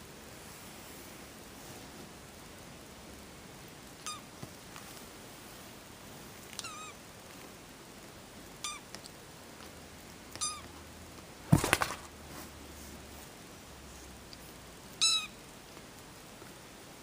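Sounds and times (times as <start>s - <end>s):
kitten mewing: 6.6s - 7.0s.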